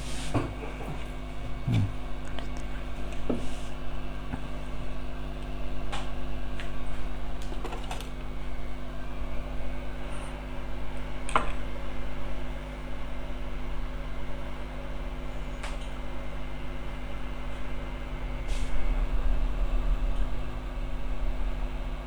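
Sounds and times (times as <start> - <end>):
hot air gun blower hum: 17.4 - 22.0.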